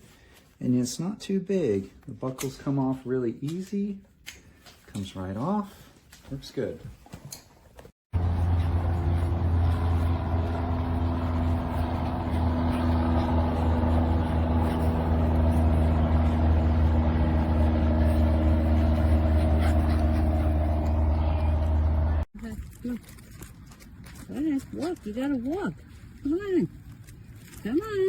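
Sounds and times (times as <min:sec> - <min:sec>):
engine running steadily: 0:08.2 - 0:22.3.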